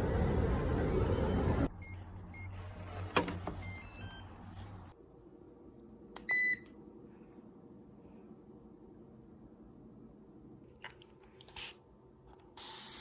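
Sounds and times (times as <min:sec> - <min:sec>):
appliance whirring: 0:00.0 - 0:01.7
low hum: 0:00.0 - 0:01.9.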